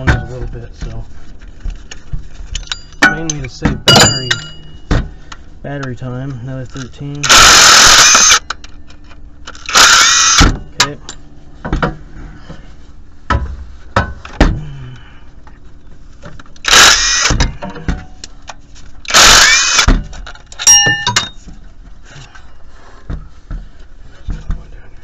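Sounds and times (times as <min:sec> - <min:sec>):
metal and tool clanks: 0:01.9 - 0:05.0, 0:19.9 - 0:21.6
impact wrench running: 0:07.2 - 0:08.6, 0:09.4 - 0:10.6, 0:16.6 - 0:17.6, 0:19.0 - 0:20.0.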